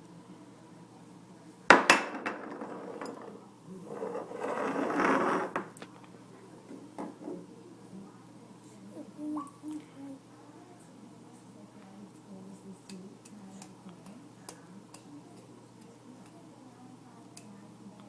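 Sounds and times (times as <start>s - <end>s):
scraping and rustling: 2.5s - 5.9s.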